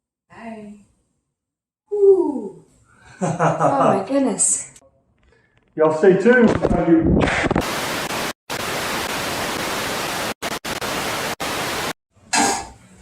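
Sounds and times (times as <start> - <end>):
static-like hiss: 6.5 - 12.7.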